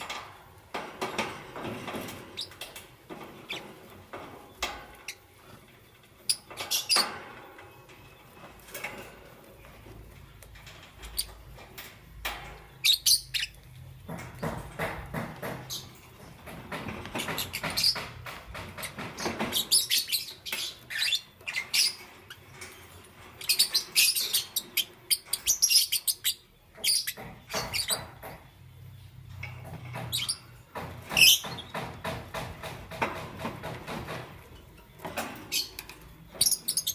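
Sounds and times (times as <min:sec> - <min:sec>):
lovebirds chirping: 0:12.6 - 0:16.2, 0:18.8 - 0:29.3.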